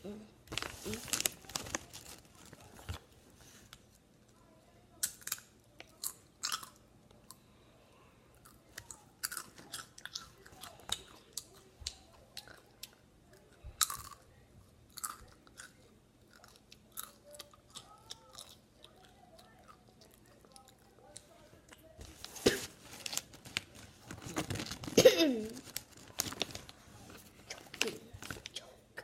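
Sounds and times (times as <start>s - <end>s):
person chewing potato chips: 5.0s - 7.4s, 8.4s - 13.0s, 13.8s - 14.2s, 14.9s - 21.0s.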